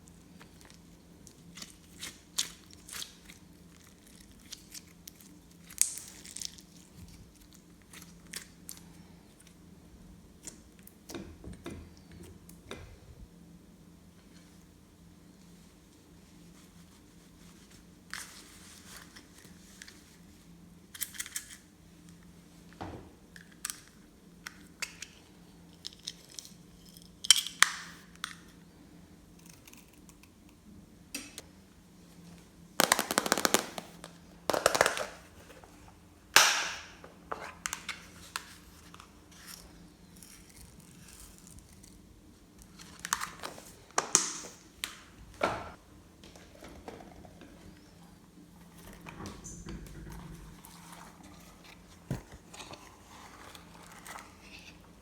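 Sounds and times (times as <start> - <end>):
slime squeezed by hand popping: 32.8 - 35.0.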